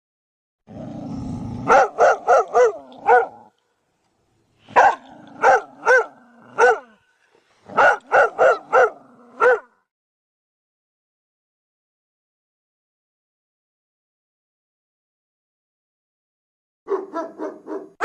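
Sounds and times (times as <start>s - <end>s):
dog growling: 0.7s - 3.5s, 4.9s - 7.0s
dog barking: 1.6s - 3.5s, 4.7s - 7.0s, 7.7s - 9.8s, 16.9s - 18.0s.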